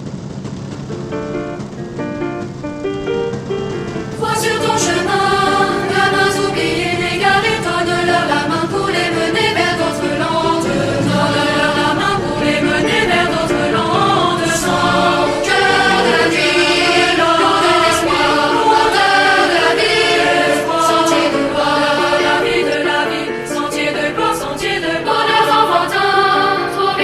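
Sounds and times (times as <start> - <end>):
choir singing sustained chords: 1.2 - 27.0.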